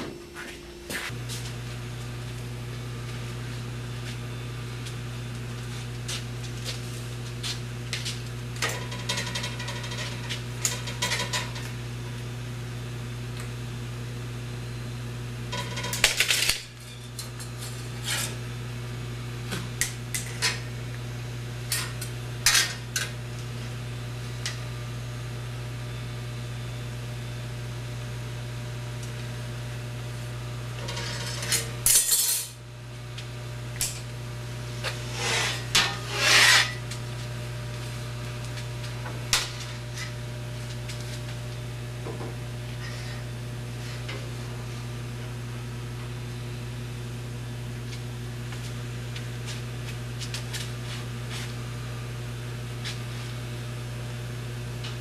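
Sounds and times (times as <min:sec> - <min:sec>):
metal scraping: 0:35.0 - 0:36.8.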